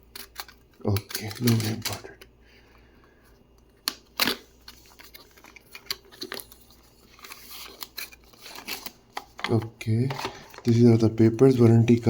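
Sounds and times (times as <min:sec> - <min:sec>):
paper and cardboard rustling: 0:04.6 - 0:10.8.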